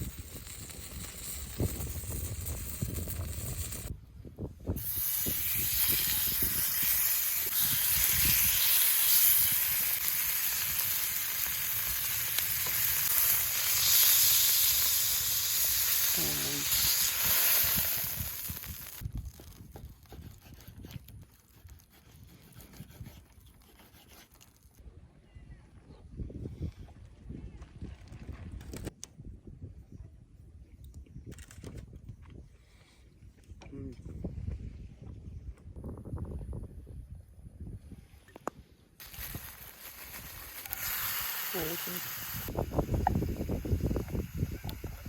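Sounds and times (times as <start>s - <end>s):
food sizzling in a hot pan: 4.8s - 19.0s, 39.0s - 45.0s.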